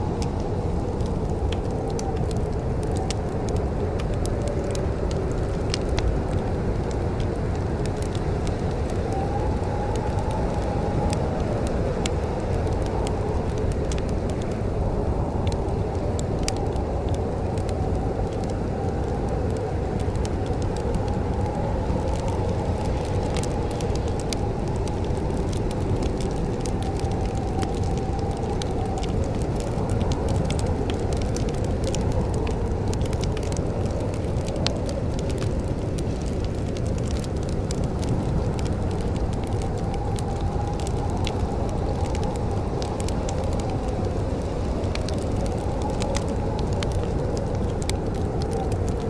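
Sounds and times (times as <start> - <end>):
fire popping and snapping: 0.0 - 49.0
wood fire crackling: 0.0 - 49.0.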